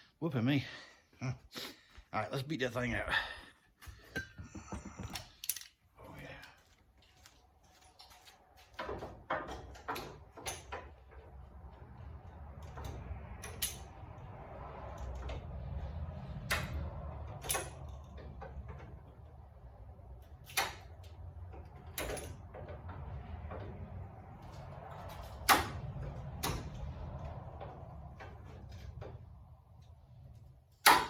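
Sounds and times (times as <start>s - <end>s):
low hum: 7.2s - 30.9s.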